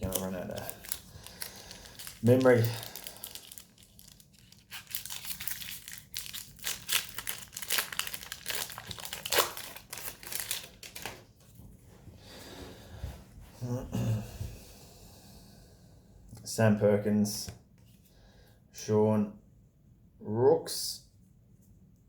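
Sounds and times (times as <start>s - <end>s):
wrapper tearing and crinkling: 0.0s - 11.2s.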